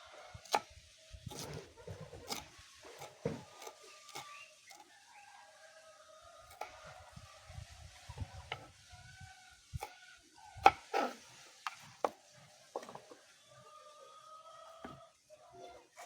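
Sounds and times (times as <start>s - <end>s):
knife chopping on wooden surface: 1.3s - 2.4s, 14.8s - 15.0s.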